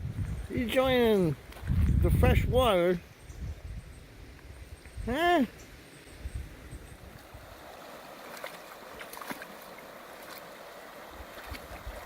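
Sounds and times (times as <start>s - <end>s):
creek water over rocks: 4.2s - 12.0s
small water splashes: 7.2s - 12.0s.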